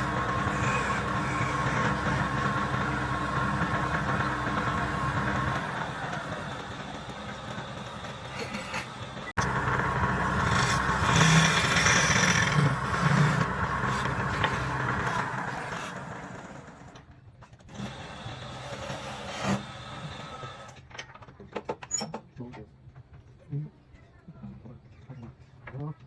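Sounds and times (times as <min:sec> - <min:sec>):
wood lathe running: 0:00.0 - 0:17.1
turning tool scraping wood: 0:10.4 - 0:16.6.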